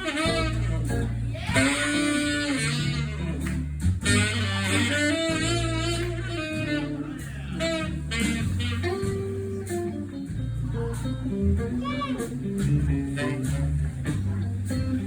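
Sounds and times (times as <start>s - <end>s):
saxophones playing melody: 0.0s - 10.2s, 13.0s - 13.8s
bass notes: 0.0s - 15.0s
guitar notes: 0.0s - 15.0s.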